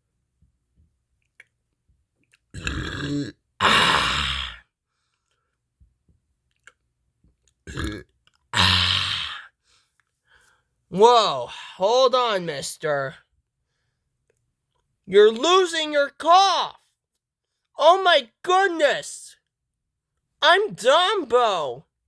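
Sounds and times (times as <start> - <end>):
person burping loudly: 2.5 - 4.7, 7.6 - 9.5.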